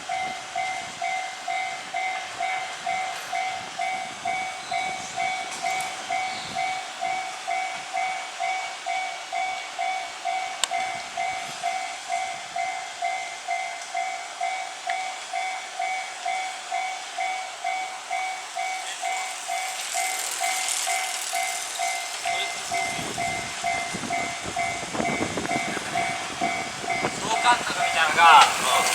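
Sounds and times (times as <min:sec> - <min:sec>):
level-crossing warning bell: 0:00.0 - 0:28.9
rushing noise: 0:18.6 - 0:28.9.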